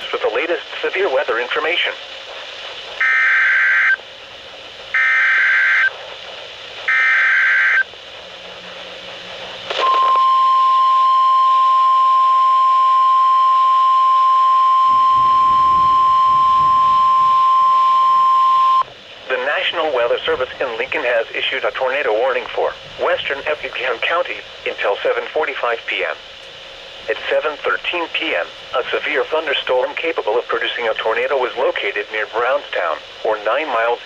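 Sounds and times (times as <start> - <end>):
steady alarm tone: 3.0 - 4.0, 5.0 - 5.9, 6.9 - 7.9, 9.8 - 18.9.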